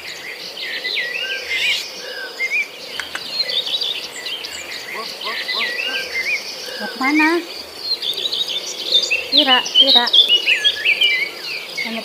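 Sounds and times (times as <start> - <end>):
myna whistling and chirping: 3.0 - 11.3.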